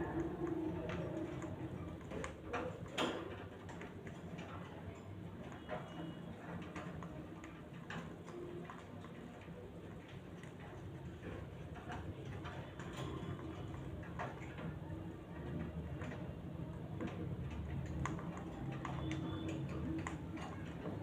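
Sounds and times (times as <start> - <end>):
parrots clicking and tapping: 17.0 - 21.0.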